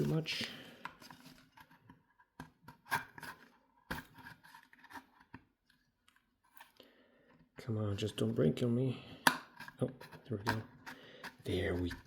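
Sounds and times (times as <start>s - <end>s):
tool scraping on kettle: 9.3s - 12.0s.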